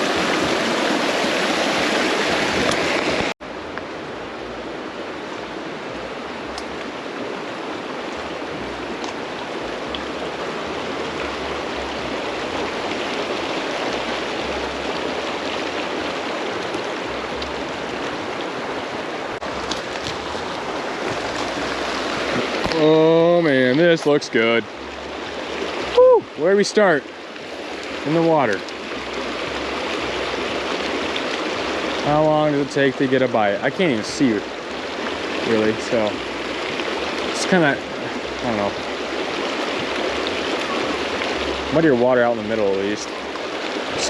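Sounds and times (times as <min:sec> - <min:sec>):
water rushing over rocks: 0:00.0 - 0:44.0.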